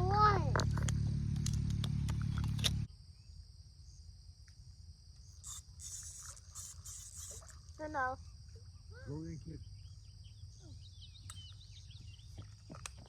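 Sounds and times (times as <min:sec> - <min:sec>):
low rumble with clicks: 0:00.0 - 0:02.9
insects chirping: 0:00.0 - 0:13.0.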